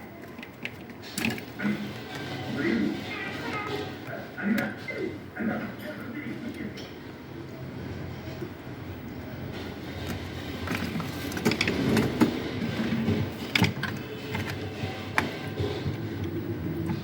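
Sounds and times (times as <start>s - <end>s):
clicks and knocks of small parts: 0.0s - 1.6s, 10.0s - 12.4s.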